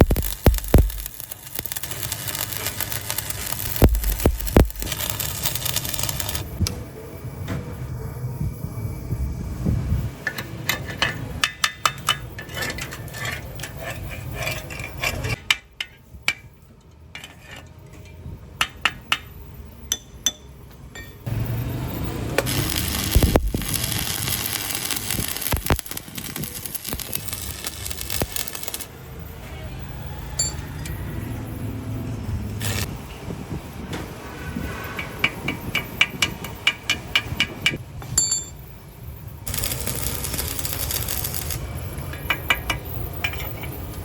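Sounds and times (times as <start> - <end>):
metal tools clinking on workbench: 38.0 - 38.6.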